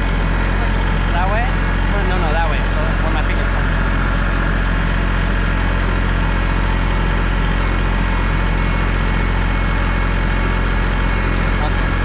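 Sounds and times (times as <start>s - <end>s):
tractor diesel engine running: 0.0s - 12.0s.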